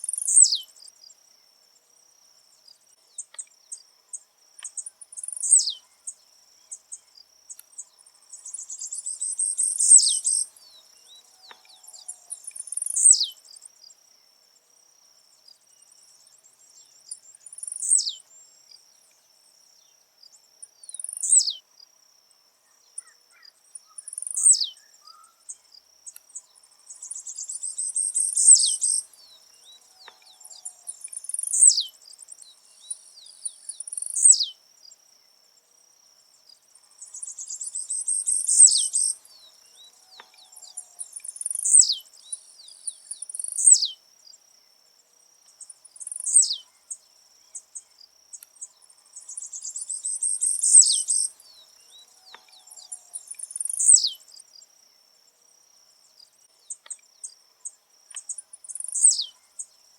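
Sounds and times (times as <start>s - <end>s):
bird singing short song: 0.0s - 1.2s, 2.6s - 13.9s, 15.4s - 19.2s, 19.8s - 21.6s, 22.6s - 34.6s, 36.8s - 44.0s, 45.5s - 54.6s, 56.1s - 59.8s
insect drone: 0.0s - 59.9s.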